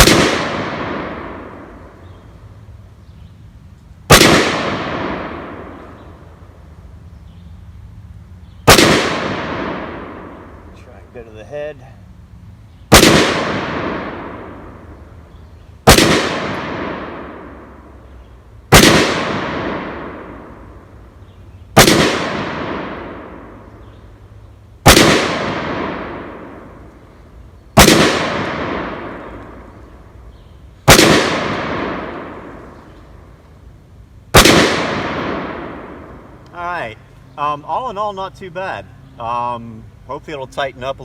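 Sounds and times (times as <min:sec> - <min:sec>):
loud rifle gunshots: 0:00.0 - 0:02.0, 0:04.1 - 0:06.1, 0:08.6 - 0:10.7, 0:12.9 - 0:14.9, 0:15.8 - 0:17.8, 0:18.7 - 0:20.8, 0:21.7 - 0:23.7, 0:24.8 - 0:26.8, 0:27.8 - 0:30.0, 0:30.8 - 0:32.9, 0:34.3 - 0:36.3.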